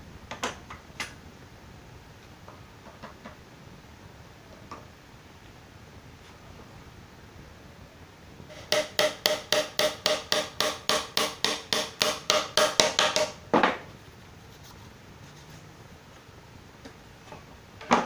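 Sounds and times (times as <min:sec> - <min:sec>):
hammer striking metal: 0:08.5 - 0:13.4.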